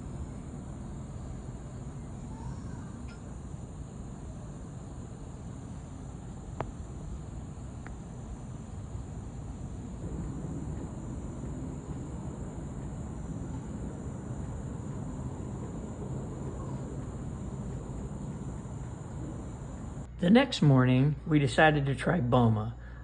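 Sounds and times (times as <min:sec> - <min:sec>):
insects chirping: 0:00.0 - 0:23.0
low rumble: 0:05.0 - 0:22.2.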